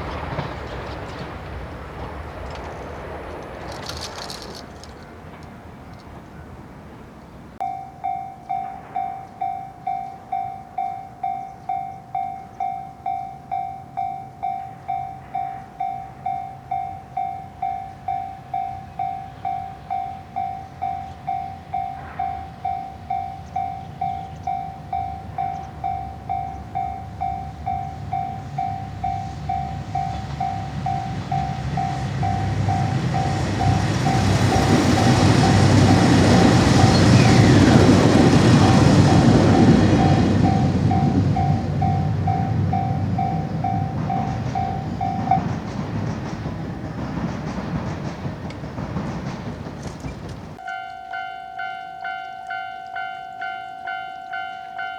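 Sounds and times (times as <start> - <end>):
train passing: 0.0 - 54.9
level crossing alarm bell ringing: 7.6 - 45.7, 50.6 - 54.9.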